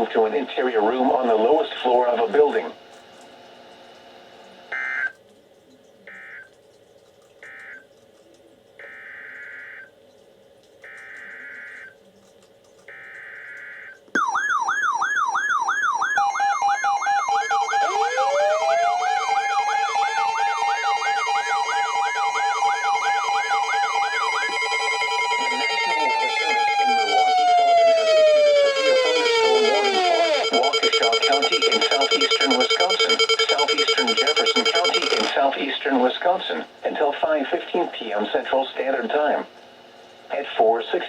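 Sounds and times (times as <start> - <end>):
siren winding up: 12.9 - 35.4
fast electronic siren wail: 13.0 - 35.3
short buzzy data tones: 28.9 - 35.4.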